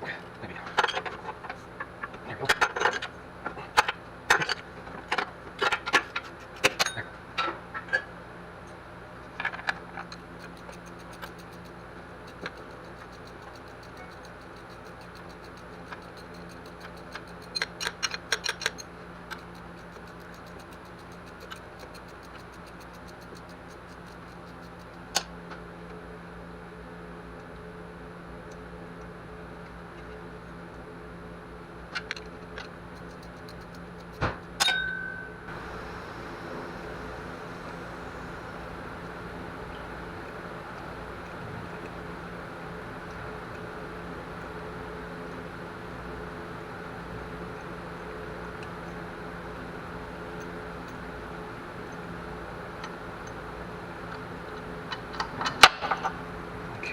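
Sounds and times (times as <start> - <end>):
steady low hum: 0.0 - 56.9
metal tools and bolts clinking: 34.6 - 35.4.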